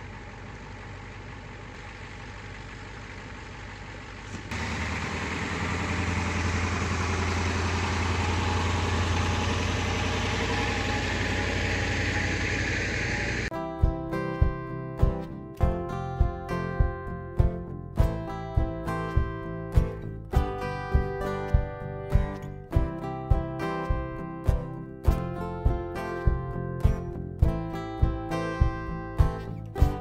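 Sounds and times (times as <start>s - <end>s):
engine idling: 0.0s - 13.5s
heavy engine humming: 0.0s - 30.0s.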